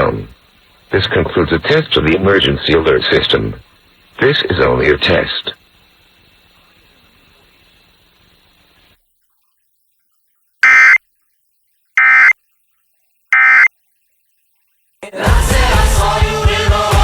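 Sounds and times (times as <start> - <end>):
warbling digital data tones: 10.6 - 11.0, 12.0 - 12.4, 13.3 - 13.7
music: 15.0 - 17.0.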